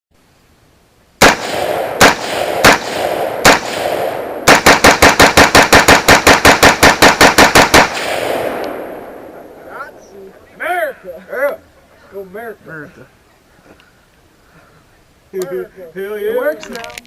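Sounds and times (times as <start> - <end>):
rapid rifle fire: 1.2 - 9.0
rifle shots: 1.2 - 9.7.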